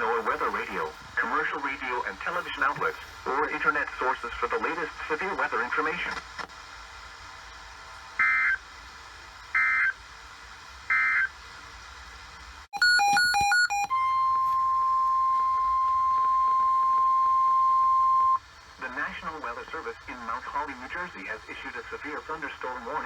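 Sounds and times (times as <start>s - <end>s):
data tone bursts: 12.8s - 18.4s
steady single-pitch alert tone: 12.8s - 18.4s
stepping tones: 12.8s - 18.4s.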